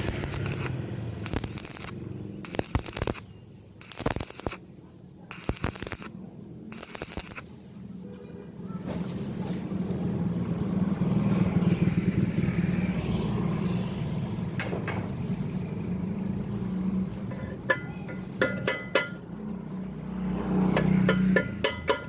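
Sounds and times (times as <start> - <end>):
welding arc crackling: 0.0 - 4.6, 5.3 - 6.1, 6.7 - 7.4.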